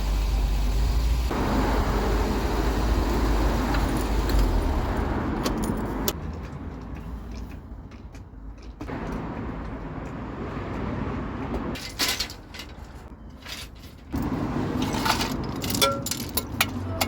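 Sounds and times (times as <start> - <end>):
car engine running: 0.0 - 6.1.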